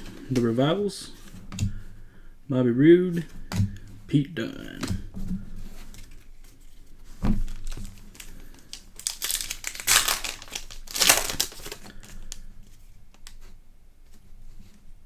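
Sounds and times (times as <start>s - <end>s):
foil wrapper crinkling and tearing: 7.4s - 12.4s.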